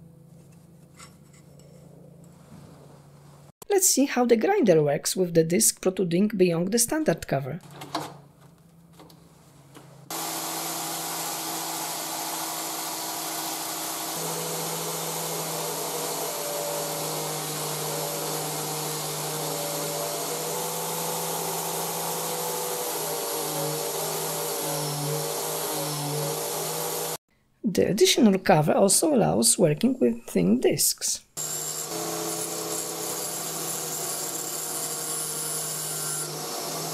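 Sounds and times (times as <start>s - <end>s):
angle grinder running: 10.1s - 27.2s, 31.4s - 36.9s.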